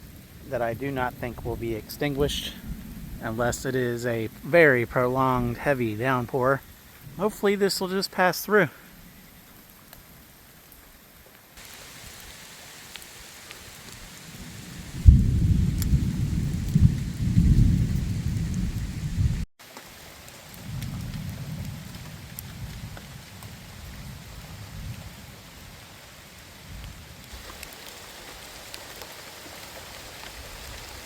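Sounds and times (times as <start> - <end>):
thunder clap and rumble: 0.0 - 7.2, 14.3 - 19.5, 20.6 - 25.4
rain falling: 0.0 - 31.0.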